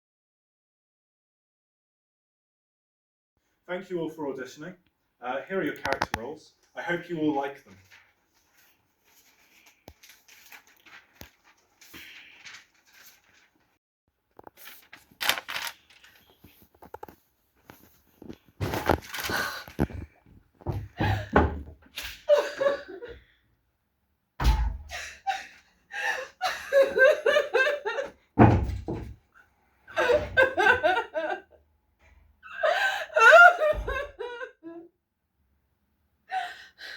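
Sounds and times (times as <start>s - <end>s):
dull thuds and knocks: 28.4s - 29.2s.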